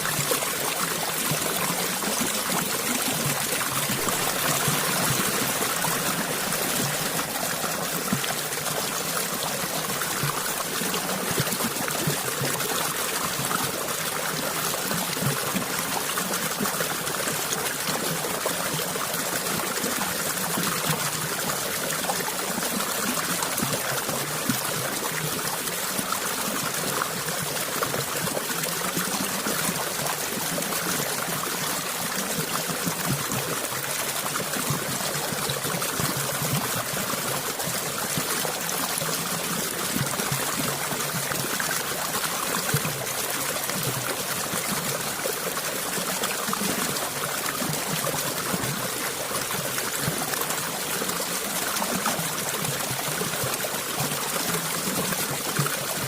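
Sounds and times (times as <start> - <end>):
running water trickling: 0.0 - 14.0.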